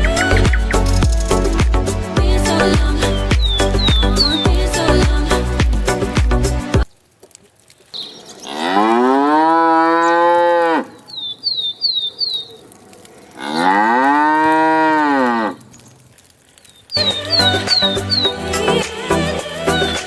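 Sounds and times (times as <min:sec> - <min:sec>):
high chirps: 0:00.0 - 0:02.0, 0:02.6 - 0:04.9, 0:16.9 - 0:20.0
cow mooing: 0:08.5 - 0:11.0, 0:13.4 - 0:15.6.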